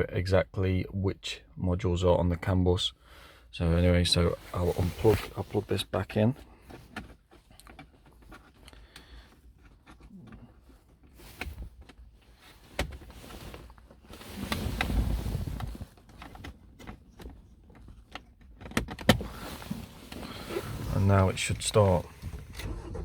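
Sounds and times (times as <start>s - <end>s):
low rustling rumble: 19.2s - 23.0s.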